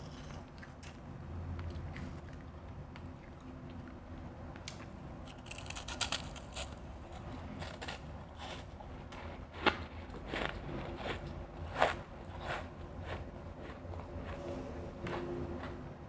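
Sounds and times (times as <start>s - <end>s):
person chewing crushed ice: 4.6s - 15.8s.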